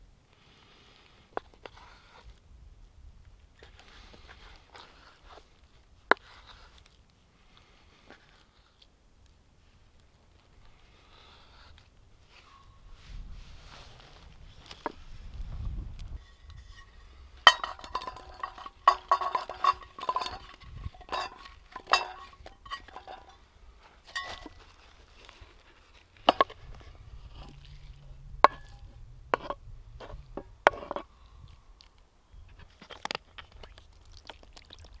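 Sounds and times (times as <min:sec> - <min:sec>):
metal utensil clinking on pot: 0:16.3 - 0:23.4, 0:24.1 - 0:24.6.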